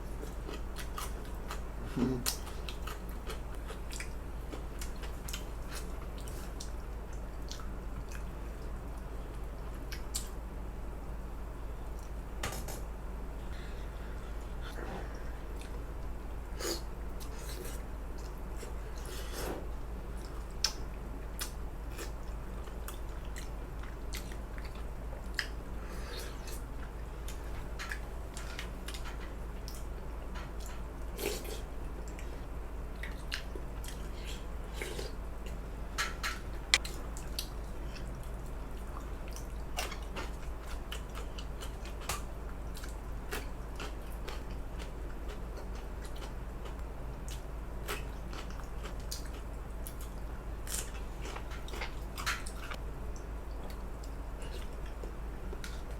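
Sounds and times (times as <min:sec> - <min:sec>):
person chewing: 0:36.3 - 0:52.8.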